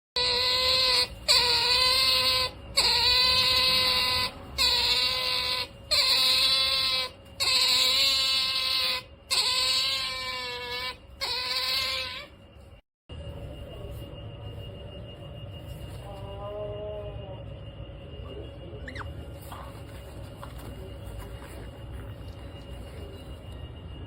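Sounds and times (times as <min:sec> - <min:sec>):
otters whining calls: 0:00.2 - 0:12.4.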